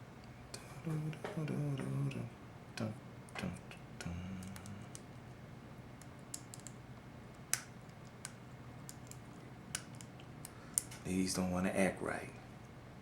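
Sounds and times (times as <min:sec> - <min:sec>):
pliers clicking on metal parts: 0:06.0 - 0:06.8.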